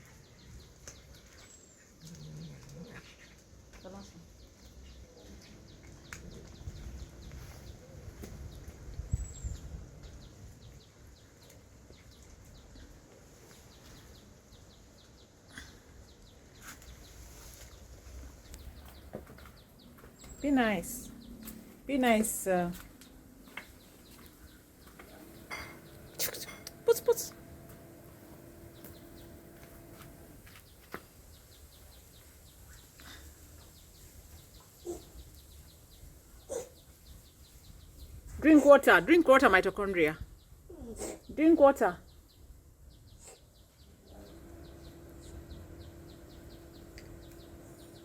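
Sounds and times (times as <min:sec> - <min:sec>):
faint bird chirping: 0:00.0 - 0:48.0
small bird chirping: 0:22.9 - 0:38.4, 0:42.1 - 0:48.0.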